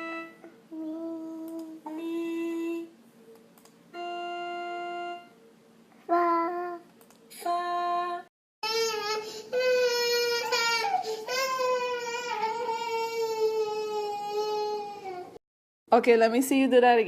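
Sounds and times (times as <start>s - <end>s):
electronic organ-like notes: 0.0s - 0.5s, 3.9s - 5.4s
child singing: 0.7s - 2.0s, 6.1s - 12.7s.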